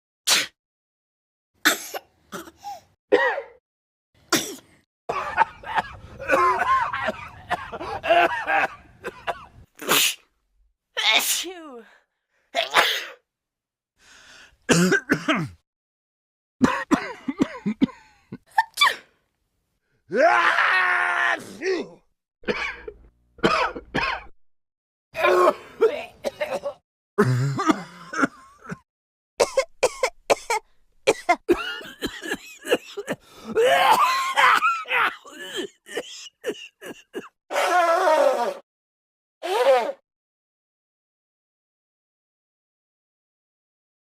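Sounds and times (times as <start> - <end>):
people sneezing: 0.3 - 0.6, 9.8 - 10.3, 12.6 - 13.2, 39.4 - 40.0
people coughing: 4.4 - 9.5, 14.7 - 15.6, 16.6 - 18.0, 22.4 - 24.3, 26.2 - 28.8, 29.4 - 37.4.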